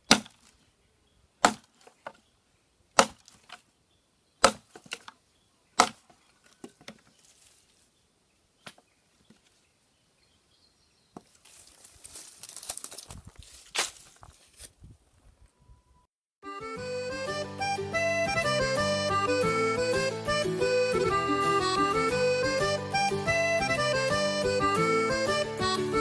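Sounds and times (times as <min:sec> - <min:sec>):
axe chopping wood: 0:00.0 - 0:00.6, 0:01.4 - 0:02.2, 0:03.0 - 0:03.6, 0:04.4 - 0:05.1, 0:05.8 - 0:07.0.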